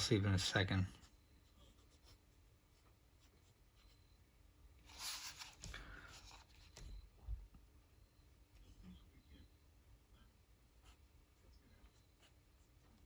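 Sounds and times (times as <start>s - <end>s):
pen scratching on paper: 1.0s - 4.1s, 10.8s - 11.1s, 11.8s - 12.8s.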